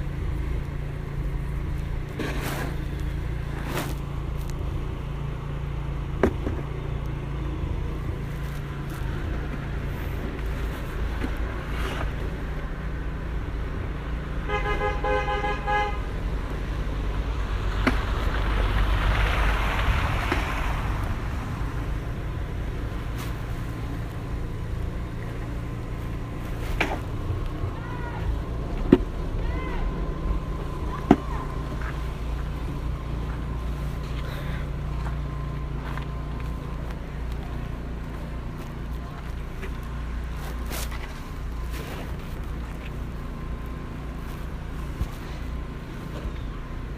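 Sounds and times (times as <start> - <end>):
car horn blare: 14.4 - 16.2.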